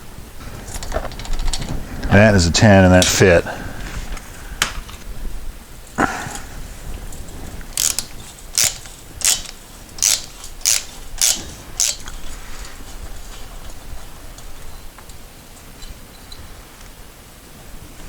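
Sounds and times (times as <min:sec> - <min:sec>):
hand ratchet clicking: 0:07.7 - 0:12.3.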